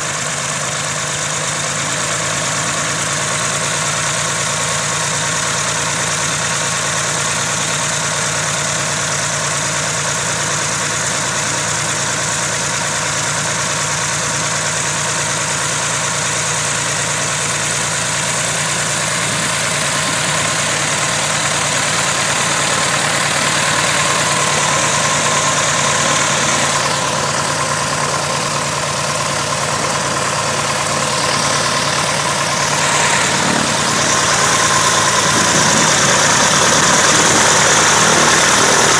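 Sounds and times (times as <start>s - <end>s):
aircraft engine running: 0.0s - 6.6s, 16.2s - 38.9s.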